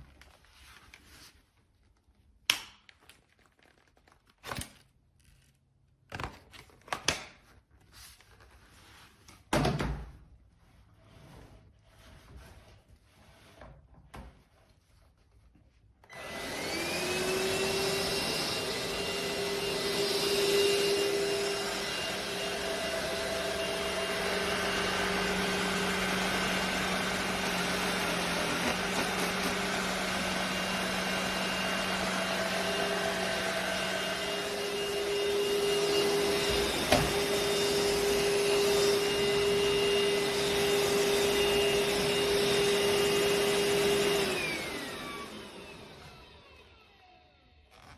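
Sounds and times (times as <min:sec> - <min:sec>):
vacuum cleaner motor whining: 0:16.0 - 0:47.9.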